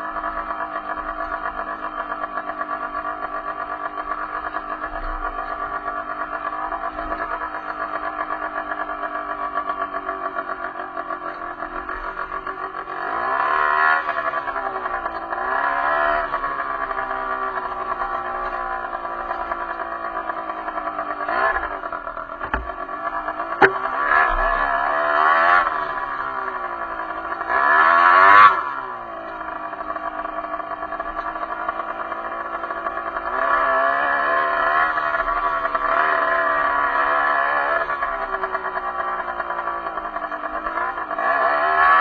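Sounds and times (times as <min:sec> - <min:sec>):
motorcycle engine revving: 0:00.0 - 0:42.0
sharp knocks: 0:22.4 - 0:22.8.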